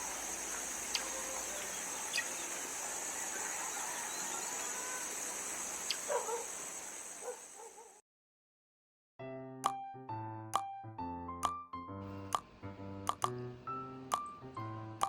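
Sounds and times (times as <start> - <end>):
clucking animal calls: 0.0 - 6.6.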